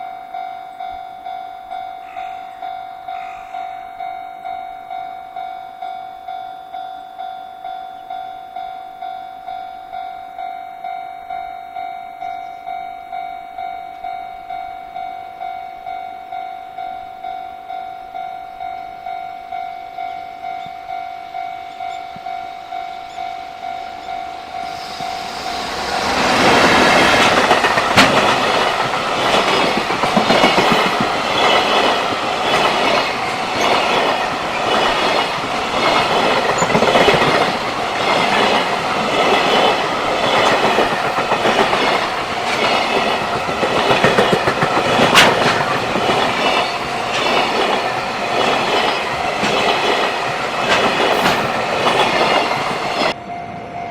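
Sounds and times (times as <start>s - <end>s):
level crossing warning bell: 0.0s - 53.9s
train wheels clattering over joints: 24.8s - 53.2s.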